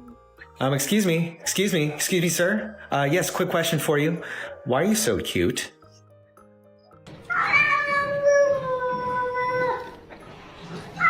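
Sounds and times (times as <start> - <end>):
cat meowing: 7.3 - 10.0.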